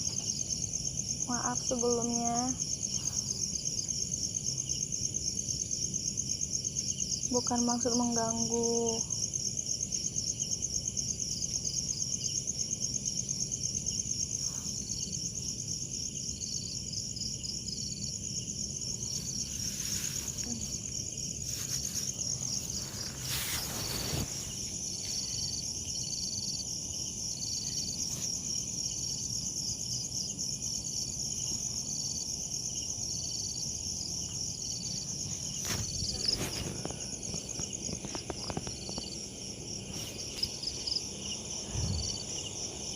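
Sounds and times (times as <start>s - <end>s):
crickets trilling: 0.0s - 42.9s
insect chirps: 0.0s - 42.9s
brief rustles: 21.5s - 24.6s.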